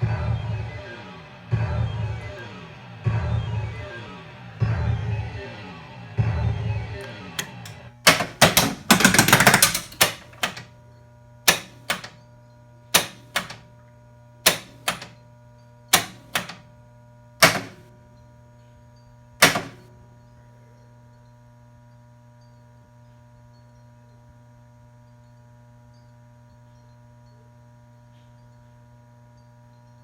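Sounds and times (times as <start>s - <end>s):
pinball machine music: 6.8s - 10.7s, 11.5s - 12.2s, 13.0s - 13.7s, 14.5s - 15.2s, 15.9s - 16.7s, 17.4s - 17.9s, 19.4s - 20.0s
steady electrical hum: 6.8s - 30.0s
pinball mechanisms clacking: 7.0s - 10.7s, 11.5s - 12.2s, 12.9s - 13.8s, 14.4s - 15.2s, 15.9s - 16.7s, 17.4s - 18.0s, 19.4s - 20.0s.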